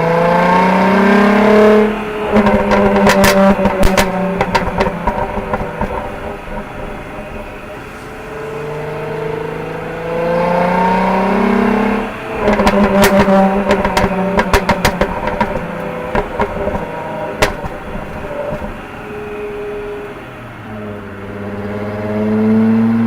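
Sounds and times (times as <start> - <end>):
car engine revving: 0.0 - 23.0
exhaust crackles and pops: 0.6 - 8.6, 10.6 - 19.6.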